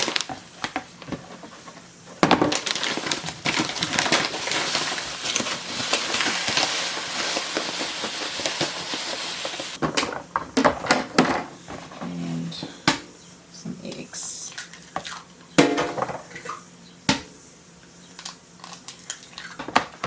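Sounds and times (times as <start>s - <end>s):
plastic packet crinkling: 0.0s - 0.4s, 2.4s - 9.8s.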